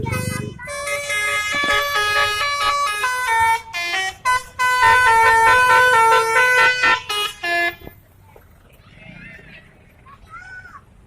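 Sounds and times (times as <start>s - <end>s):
bus musical horn tune: 0.0s - 8.0s.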